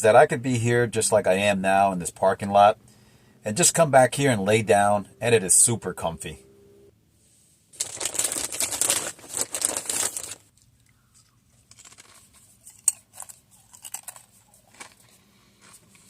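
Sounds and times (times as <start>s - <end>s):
rustling and crinkling: 7.7s - 16.0s.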